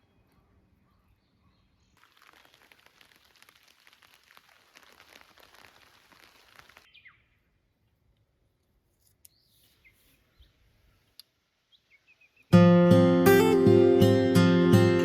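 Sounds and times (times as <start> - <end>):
faint bird chirps: 0.0 - 2.0, 6.9 - 7.6, 9.2 - 12.6
faint crackling hiss: 2.0 - 6.9, 8.1 - 13.6.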